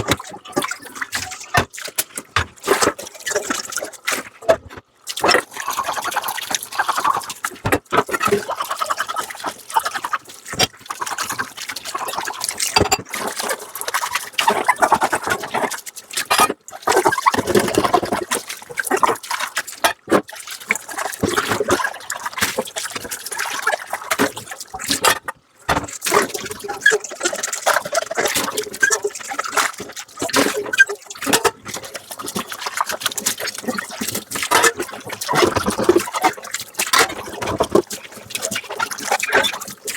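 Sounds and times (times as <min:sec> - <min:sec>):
water running and splashing: 0:00.0 - 0:04.4, 0:05.0 - 0:39.9
crockery clinking: 0:12.8 - 0:13.1.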